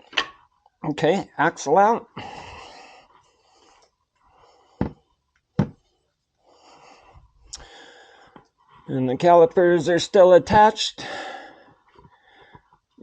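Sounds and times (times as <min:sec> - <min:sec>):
faint breathing: 0:02.2 - 0:05.2, 0:05.8 - 0:08.9, 0:11.0 - 0:12.8.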